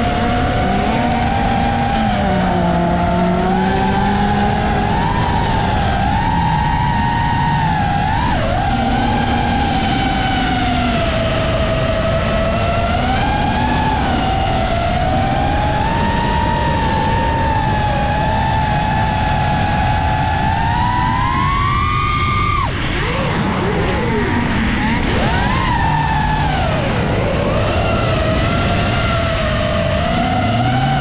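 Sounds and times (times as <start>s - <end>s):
drone motors whining: 0.0s - 31.0s.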